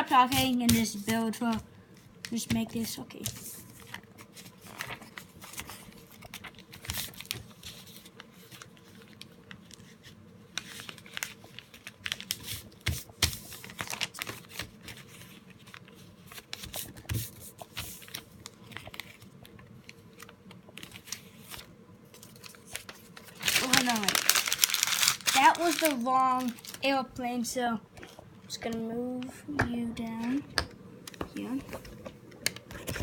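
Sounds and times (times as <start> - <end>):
paper being folded and creased: 2.2 - 27.1, 31.4 - 33.0.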